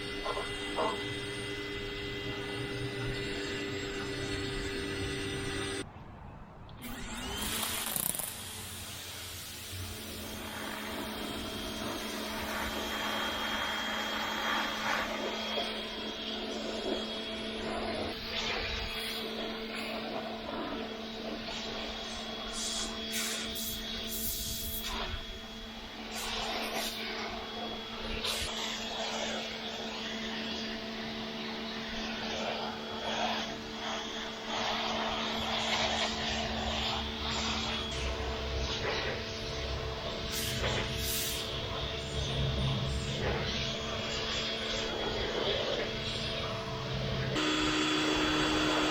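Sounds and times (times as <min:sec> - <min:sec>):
pressure washer motor drone: 0:00.0 - 0:05.8, 0:06.8 - 0:48.9
high-pressure water jet hissing: 0:06.9 - 0:48.9
water spray hissing on siding: 0:26.0 - 0:27.2.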